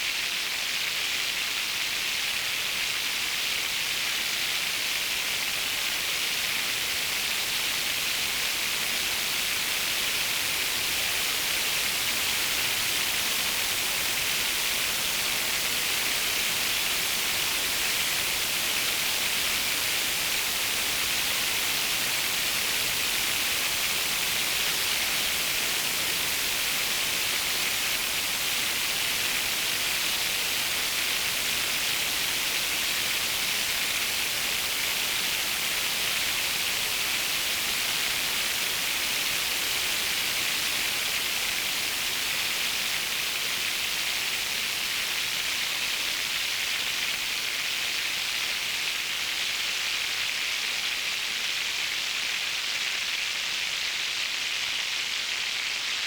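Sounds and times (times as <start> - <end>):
synthesized rain hiss: 0.0 - 56.0.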